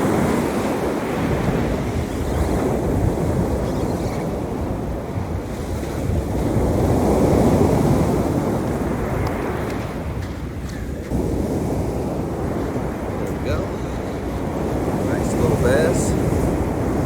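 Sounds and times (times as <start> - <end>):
ocean surf washing onto beach: 0.0 - 17.0
wind buffeting microphone: 0.0 - 17.0.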